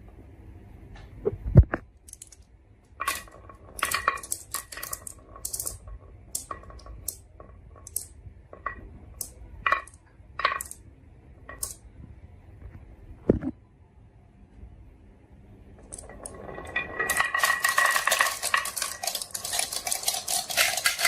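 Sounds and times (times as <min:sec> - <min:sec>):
marbles clattering on track: 0:02.1 - 0:10.8, 0:11.4 - 0:11.8, 0:15.8 - 0:21.0.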